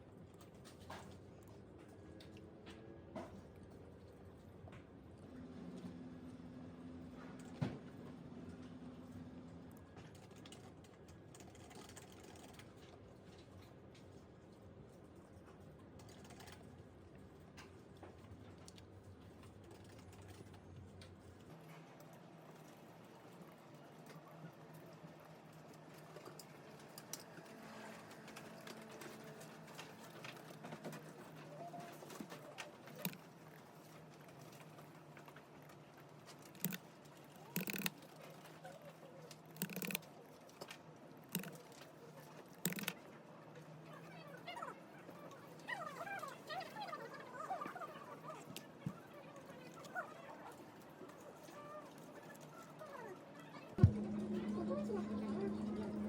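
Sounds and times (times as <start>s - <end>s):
computer keyboard taps: 39.6s - 40.0s, 42.7s - 42.9s
crunchy snack chewing: 39.6s - 40.0s
low steady hum: 53.8s - 56.0s.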